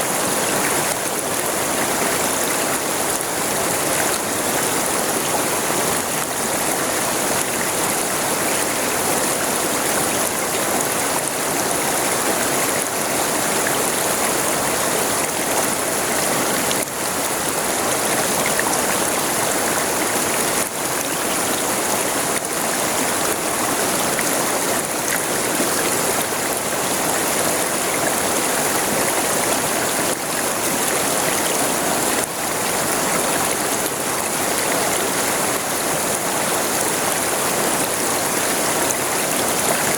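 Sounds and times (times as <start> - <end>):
river water rushing over stones: 0.0 - 39.9.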